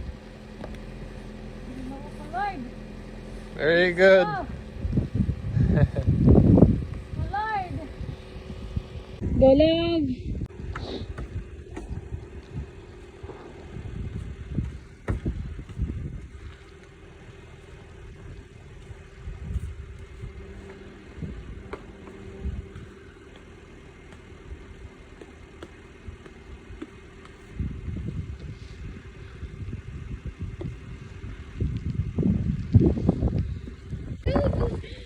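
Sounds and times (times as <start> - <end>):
car engine idling: 0.0 - 35.0
thumps: 10.7 - 16.9.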